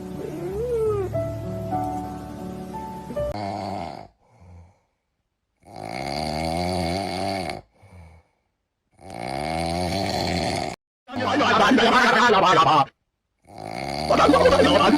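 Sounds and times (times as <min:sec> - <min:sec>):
person snoring: 0:03.3 - 0:04.9, 0:05.6 - 0:11.4, 0:13.4 - 0:14.9
faint breath: 0:04.2 - 0:05.2, 0:07.7 - 0:08.6.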